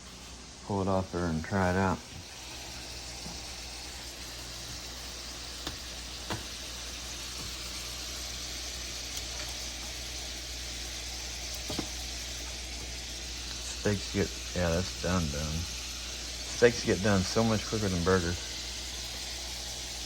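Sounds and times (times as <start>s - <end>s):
meat sizzling in a skillet: 0.0s - 20.0s
utensil clicking against pan: 5.6s - 6.6s.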